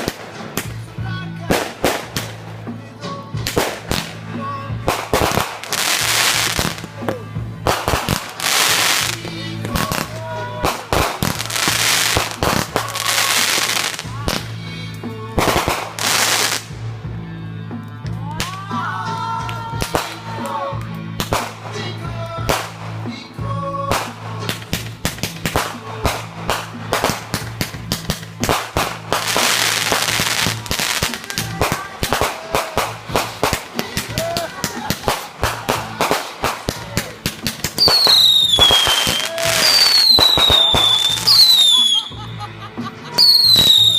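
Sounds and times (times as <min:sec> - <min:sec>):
fireworks bangs and crackles: 0:00.0 - 0:17.1, 0:19.4 - 0:23.2, 0:23.9 - 0:42.3, 0:43.1 - 0:43.9
fireworks hissing bursts: 0:04.9 - 0:14.6, 0:15.4 - 0:16.9, 0:24.0 - 0:42.2.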